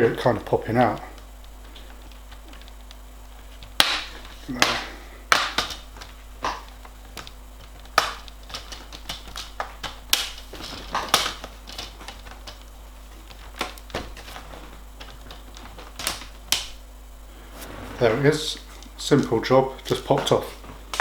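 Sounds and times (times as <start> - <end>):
plastic clips snapping loose: 13.3 - 16.8.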